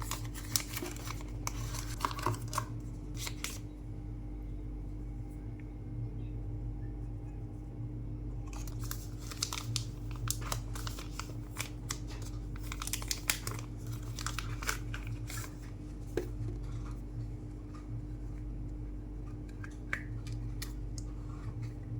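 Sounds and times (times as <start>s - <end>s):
packaging crinkling and tearing: 0.0s - 3.6s, 8.5s - 15.8s
steady low hum: 0.0s - 21.9s.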